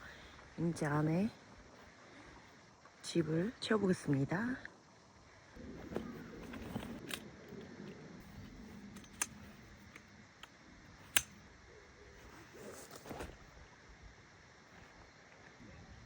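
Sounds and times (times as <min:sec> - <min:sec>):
soft rustling and shuffling: 0:05.6 - 0:07.2, 0:12.2 - 0:13.6
sharp clicks: 0:08.8 - 0:11.4.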